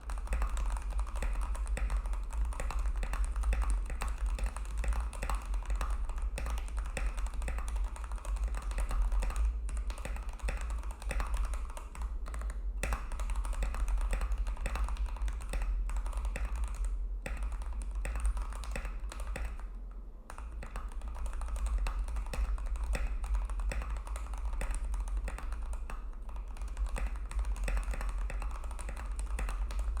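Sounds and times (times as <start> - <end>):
fast mechanical keyboard typing: 0.0 - 30.0
steady low hum: 0.0 - 30.0.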